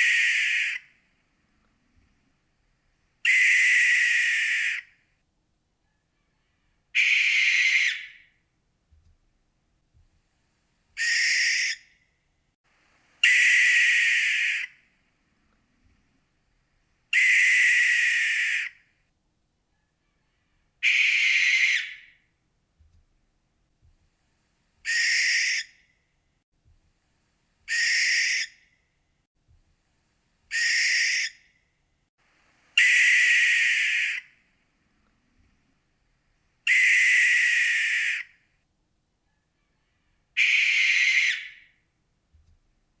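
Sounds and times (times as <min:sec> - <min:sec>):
owl screeching: 0:00.0 - 0:01.0, 0:03.2 - 0:05.0, 0:07.0 - 0:08.4, 0:11.0 - 0:11.9, 0:13.2 - 0:14.8, 0:17.1 - 0:18.9, 0:20.8 - 0:22.2, 0:24.9 - 0:25.8, 0:27.7 - 0:28.6, 0:30.5 - 0:31.5, 0:32.8 - 0:34.4, 0:36.7 - 0:38.4, 0:40.4 - 0:41.8.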